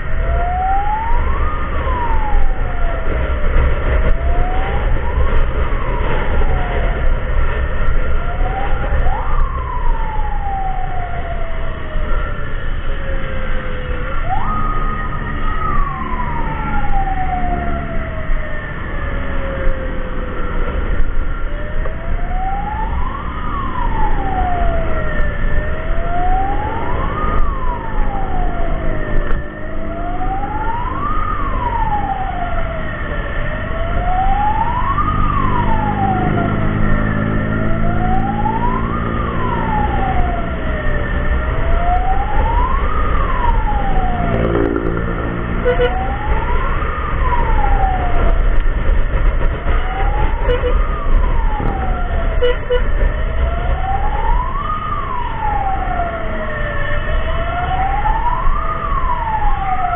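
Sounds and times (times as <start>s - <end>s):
electronic siren wailing: 0.0s - 59.9s
vehicle engine and road rumble: 0.0s - 59.9s.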